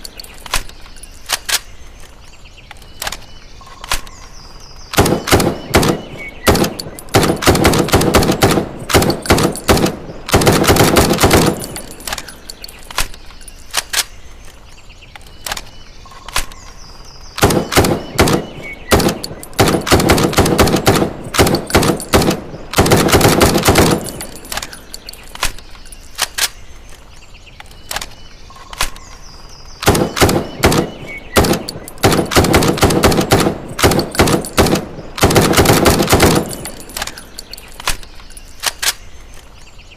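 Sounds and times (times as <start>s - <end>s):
rifle gunshots: 5.0s - 12.0s, 17.4s - 24.4s, 29.8s - 37.2s.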